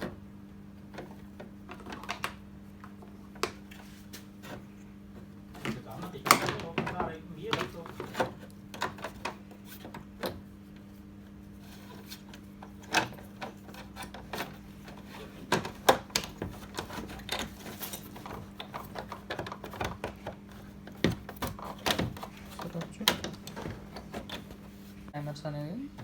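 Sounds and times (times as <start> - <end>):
clicks and knocks on plastic panel: 12.6 - 17.6, 18.2 - 24.6.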